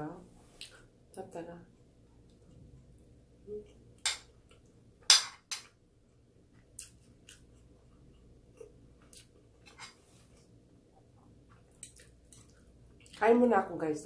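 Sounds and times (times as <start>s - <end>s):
eating clicks and smacks: 11.6s - 13.2s.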